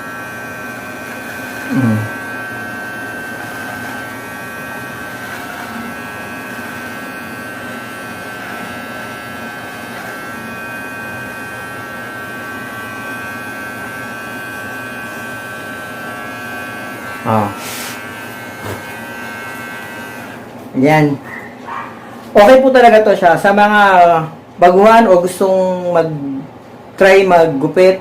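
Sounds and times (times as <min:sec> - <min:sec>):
electric hair clipper buzzing: 0:00.0 - 0:20.7.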